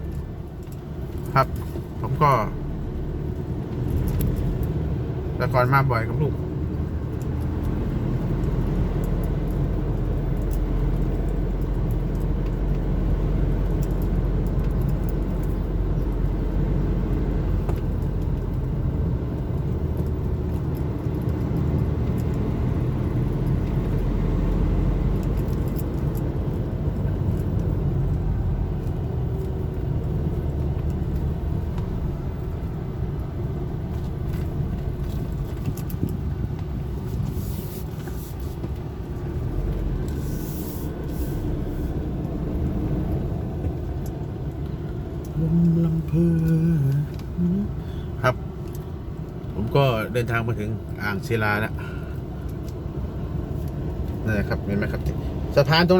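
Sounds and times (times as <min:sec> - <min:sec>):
car engine and road rumble: 0:00.0 - 0:55.9
faint ticks: 0:44.0 - 0:48.0.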